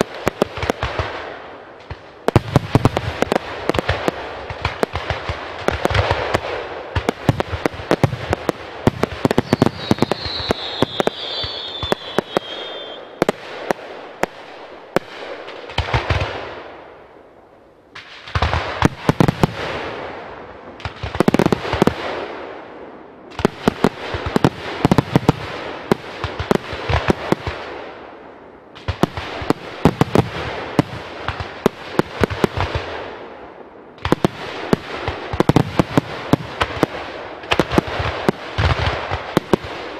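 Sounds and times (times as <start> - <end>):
fireworks bangs and crackling: 0.0 - 17.2, 17.9 - 39.9
short high whistle: 9.7 - 13.1.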